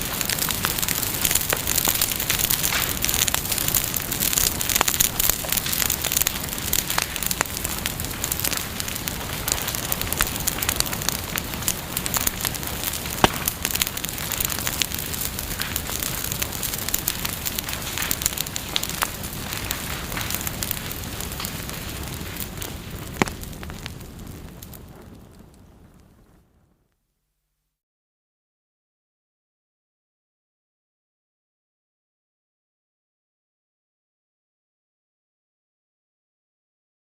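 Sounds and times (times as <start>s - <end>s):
bonfire crackling: 0.0s - 26.9s
sharp pop from fire: 11.6s - 16.5s, 17.2s - 24.0s.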